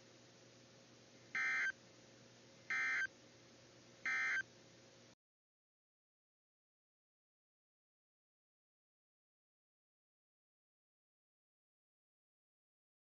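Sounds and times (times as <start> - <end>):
digital data tone bursts: 1.4 - 1.8, 2.7 - 3.1, 4.1 - 4.4.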